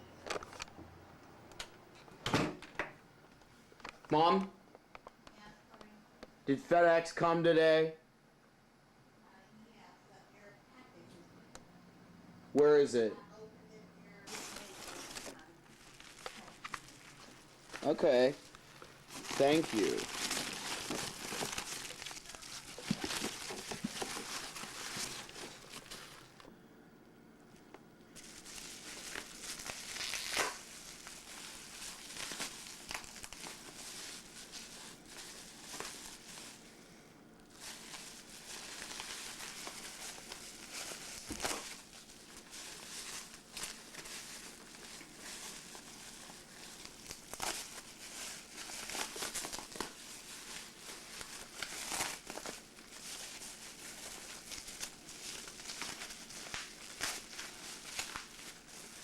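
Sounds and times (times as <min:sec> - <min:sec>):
packaging crinkling and tearing: 0:14.3 - 0:26.5, 0:28.2 - 0:36.7, 0:37.4 - 0:59.0.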